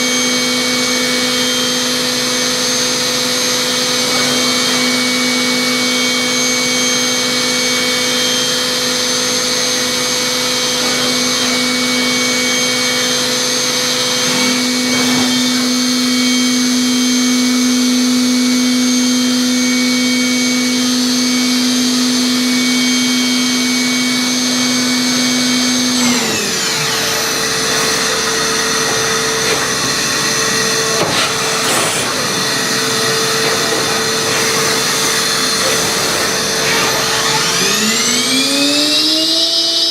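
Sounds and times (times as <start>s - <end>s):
machine whine: 0.0s - 39.9s
motor hum: 2.6s - 39.9s
machine noise rush: 26.3s - 38.6s.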